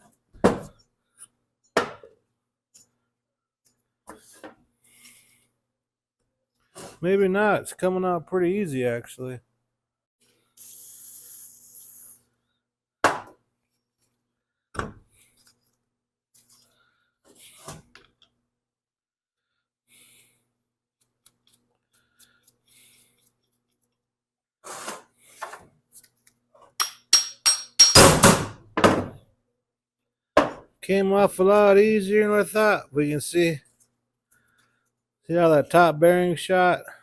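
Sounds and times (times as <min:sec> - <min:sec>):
sharp metal knocks: 0:26.8 - 0:29.2.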